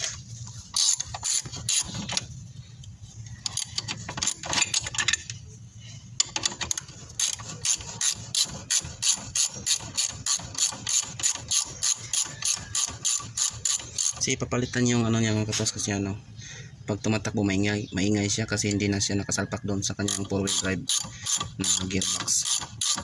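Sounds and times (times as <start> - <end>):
ratchet wrench clicking: 0.7 - 2.2, 3.4 - 5.3, 6.2 - 14.3, 20.0 - 23.0.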